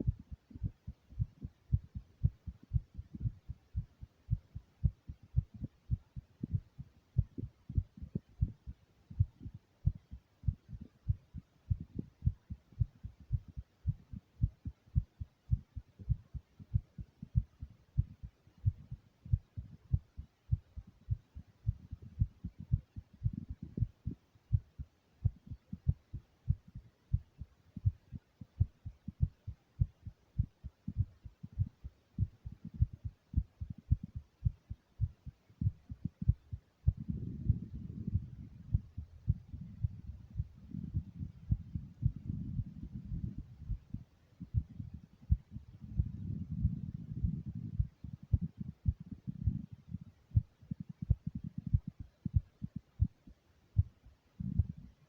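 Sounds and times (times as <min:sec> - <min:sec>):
heartbeat thumps: 0:00.0 - 0:55.0.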